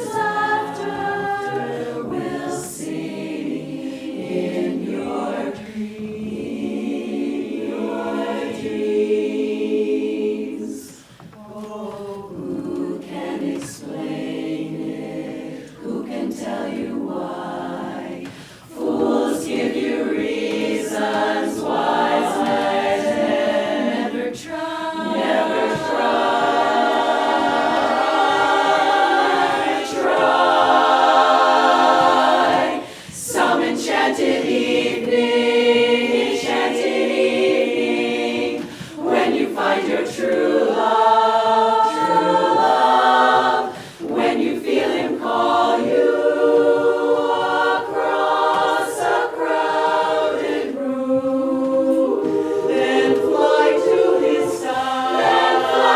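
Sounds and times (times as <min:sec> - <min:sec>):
women's chorus singing a cappella: 0:00.0 - 0:55.9.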